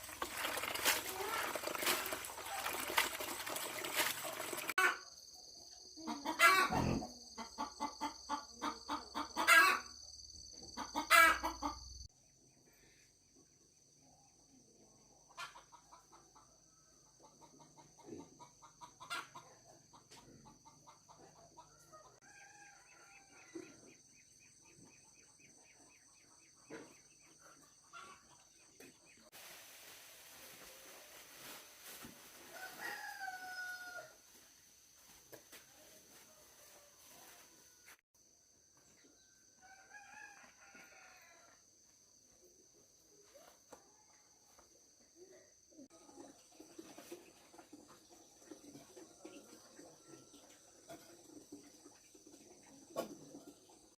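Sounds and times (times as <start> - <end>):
chicken clucking and calling: 5.8 - 12.0, 15.2 - 24.1.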